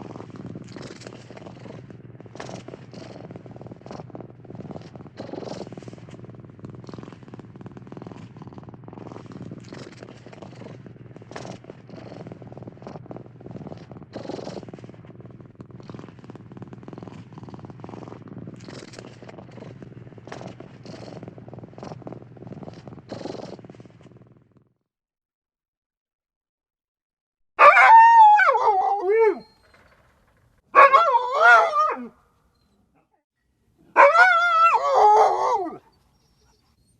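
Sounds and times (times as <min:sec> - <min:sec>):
cat purring: 0:00.0 - 0:24.8.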